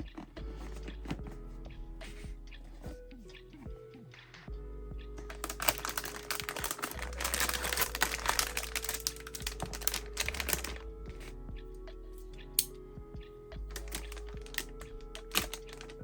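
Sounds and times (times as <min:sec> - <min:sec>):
background music: 0:00.0 - 0:16.0
quick small clicks and rustles: 0:05.3 - 0:10.8, 0:13.8 - 0:16.0.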